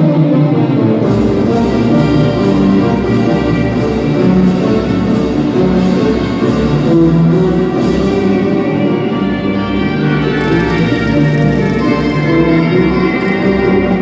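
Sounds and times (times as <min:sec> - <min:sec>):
high percussion: 0:10.0 - 0:14.0
dance music with steady beat: 0:10.2 - 0:13.8.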